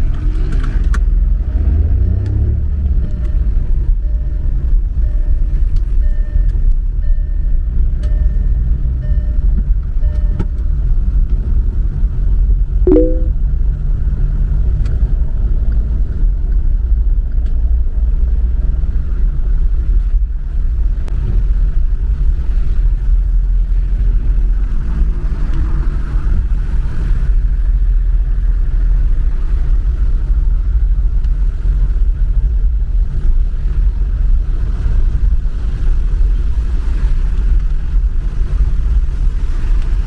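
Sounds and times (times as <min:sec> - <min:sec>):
car driving on wet road: 0:00.0 - 0:07.0, 0:14.3 - 0:40.0
short pitched tone: 0:12.9 - 0:13.3.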